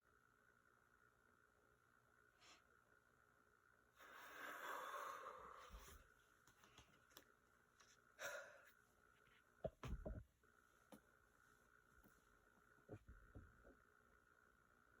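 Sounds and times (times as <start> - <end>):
person breathing out: 4.0 - 5.9, 8.2 - 8.7.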